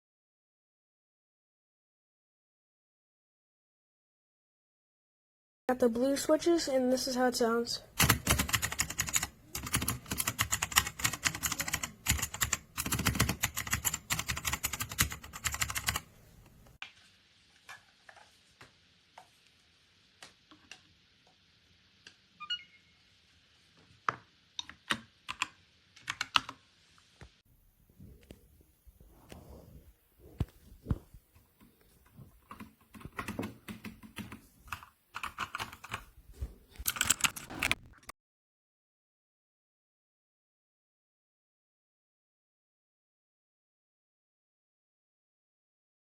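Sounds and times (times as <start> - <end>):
mechanical keyboard typing: 8.0 - 16.1, 24.6 - 26.6, 32.4 - 36.1, 36.8 - 37.9.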